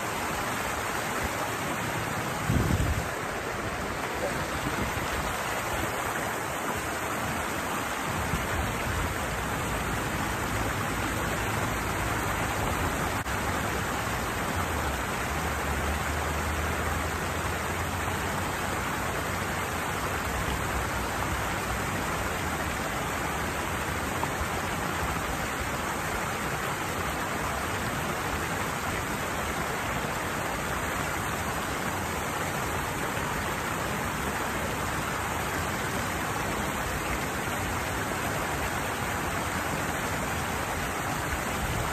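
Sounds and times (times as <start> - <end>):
water pouring down cascade: 0.0 - 41.9.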